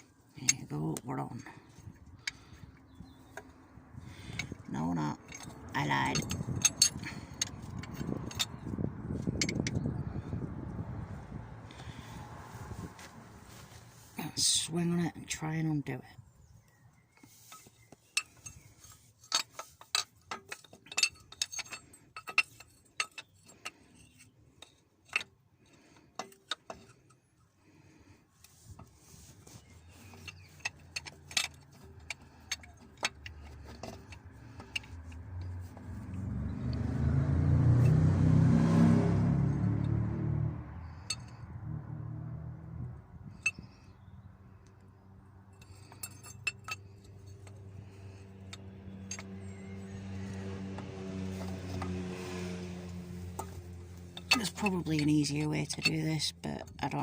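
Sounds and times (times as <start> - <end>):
passing vehicle engine: 0.0 - 15.1, 20.6 - 57.0
metal spanner clinking: 4.1 - 10.2, 17.4 - 27.2, 29.8 - 36.9, 40.9 - 41.4, 43.3 - 43.9, 45.5 - 57.0.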